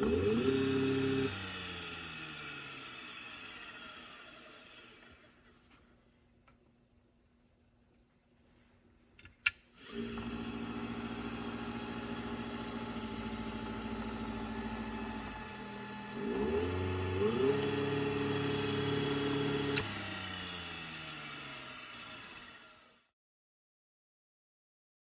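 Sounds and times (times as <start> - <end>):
grinder motor humming: 0.0 - 5.3, 9.7 - 23.0.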